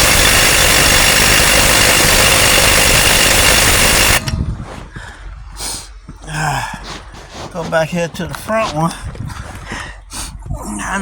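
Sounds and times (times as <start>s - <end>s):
impact wrench running: 0.0s - 4.4s.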